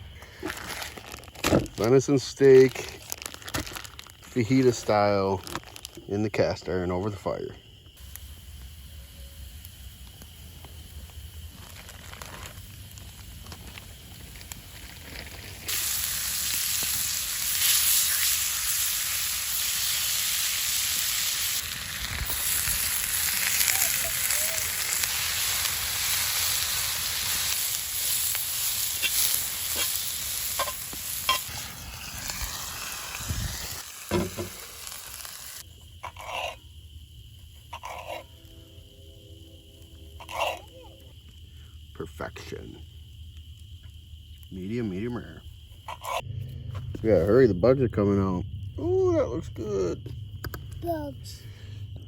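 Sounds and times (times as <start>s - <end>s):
steak sizzling in a pan: 8.0s - 35.6s.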